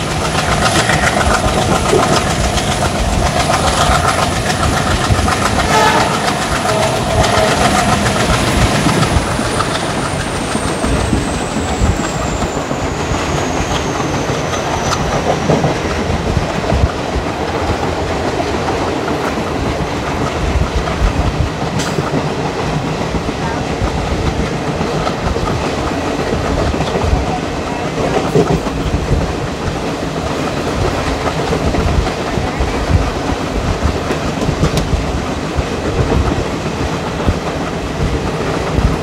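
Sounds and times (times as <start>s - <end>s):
train wheels clattering over rail joints: 0.0s - 39.0s
train horn: 5.6s - 8.2s.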